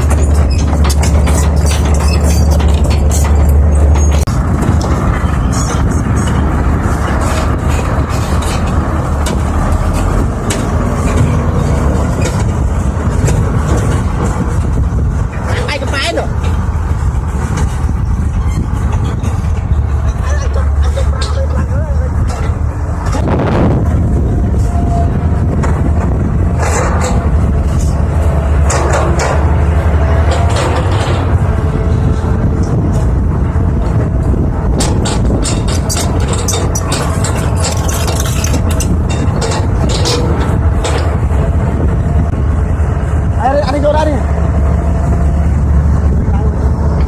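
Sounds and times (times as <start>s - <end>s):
sharp metal clanks: 0.0s - 4.3s
scraping and clanking digging: 0.0s - 33.2s, 33.8s - 41.6s
excavator diesel engine rumbling: 0.0s - 47.0s.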